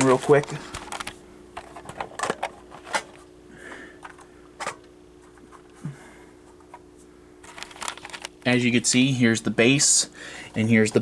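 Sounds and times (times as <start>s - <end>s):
faint steady hum: 0.0s - 11.0s
plastic clicks and scrapes: 7.5s - 8.4s.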